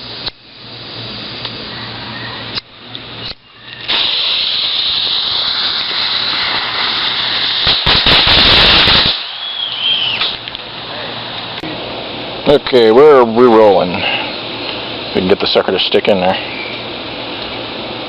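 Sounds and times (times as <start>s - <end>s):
firework crackling burst: 0.0s - 12.2s
firework hissing: 0.0s - 18.0s
high whistling tone: 9.2s - 11.1s.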